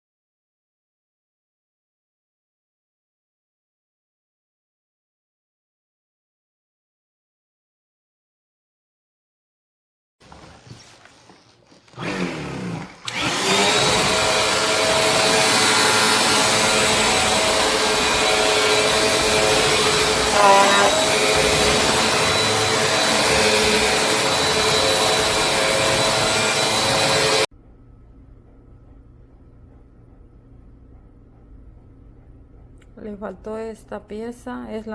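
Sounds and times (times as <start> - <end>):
vacuum cleaner motor whine: 10.2 - 27.5.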